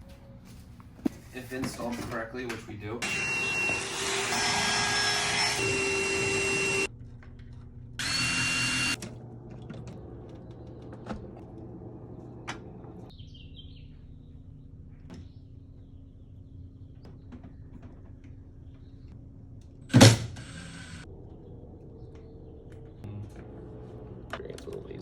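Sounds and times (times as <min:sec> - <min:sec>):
power drill running: 0:03.0 - 0:06.9, 0:08.0 - 0:09.0, 0:19.9 - 0:21.1.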